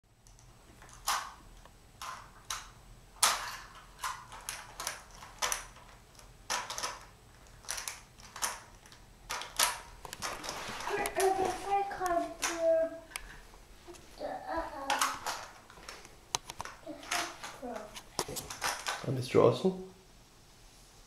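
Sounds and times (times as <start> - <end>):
faint low hum: 0.1 - 21.0
small hard objects clicking: 0.2 - 13.4.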